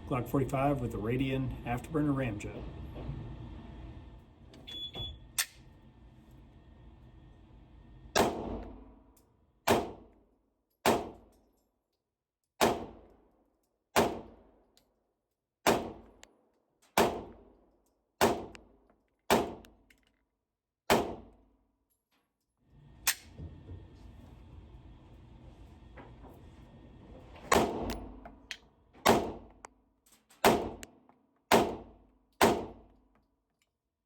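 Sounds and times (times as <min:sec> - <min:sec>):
pistol shots: 0:08.2 - 0:08.7, 0:09.7 - 0:10.1, 0:10.9 - 0:11.2, 0:12.6 - 0:13.1, 0:14.0 - 0:14.4, 0:15.7 - 0:16.1, 0:17.0 - 0:17.4, 0:18.2 - 0:18.6, 0:19.3 - 0:19.6, 0:20.9 - 0:21.3, 0:29.1 - 0:29.5, 0:30.4 - 0:30.8, 0:31.5 - 0:32.8.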